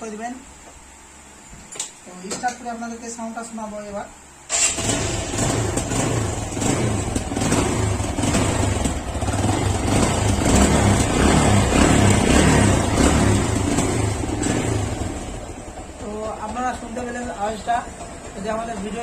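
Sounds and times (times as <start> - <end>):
motorcycle engine running: 4.5 - 19.0.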